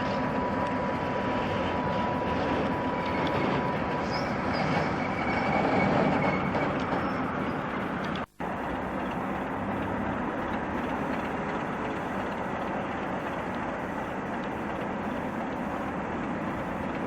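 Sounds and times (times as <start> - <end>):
train rumbling past: 0.0 - 16.9
faint high squeal: 2.8 - 7.6.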